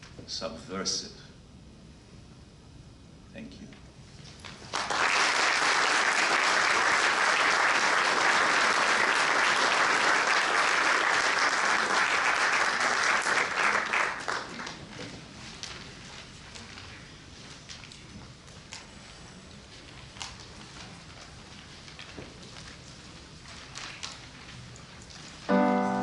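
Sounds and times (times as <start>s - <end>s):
audience applauding: 4.6s - 14.9s.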